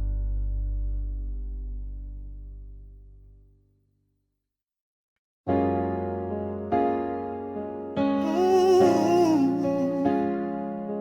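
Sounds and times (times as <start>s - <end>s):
slow sad electric piano music: 5.5s - 11.0s.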